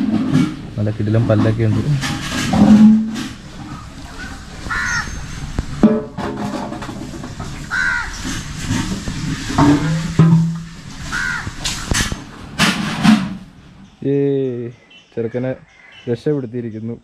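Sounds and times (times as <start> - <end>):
crows cawing: 3.6 - 5.6, 7.6 - 8.6, 11.0 - 12.1, 14.7 - 16.1.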